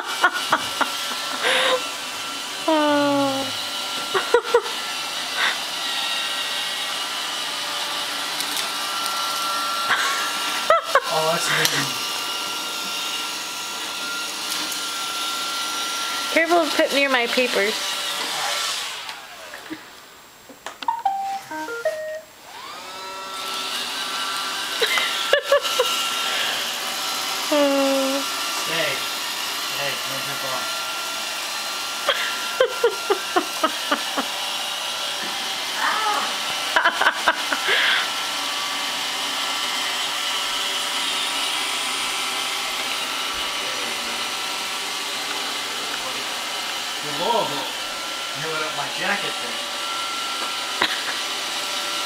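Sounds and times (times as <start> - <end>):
robot vacuum running: 0.0 - 19.9, 22.5 - 52.0
electronic beep tune: 20.9 - 22.3.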